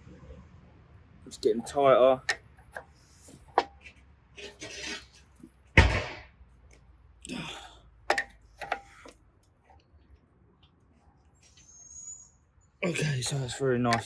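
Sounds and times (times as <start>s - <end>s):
spanner scraping and clinking: 13.1s - 14.0s.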